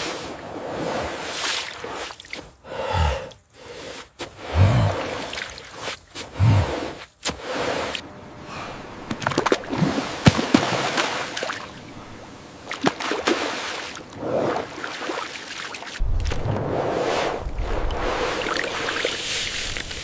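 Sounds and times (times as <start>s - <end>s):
water sloshing and splashing: 4.2s - 8.0s, 9.0s - 20.0s
low rumble: 16.0s - 19.8s.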